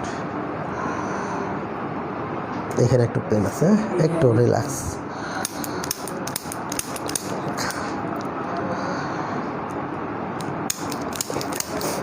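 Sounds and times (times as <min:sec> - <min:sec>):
sharp clicks: 0:05.4 - 0:07.8.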